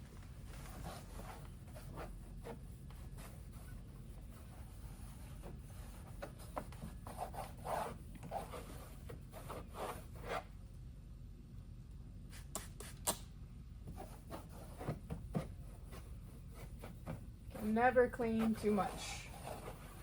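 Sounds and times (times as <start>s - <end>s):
low steady hum: 0.0s - 20.0s
wipe rubbing on glass: 15.8s - 20.0s.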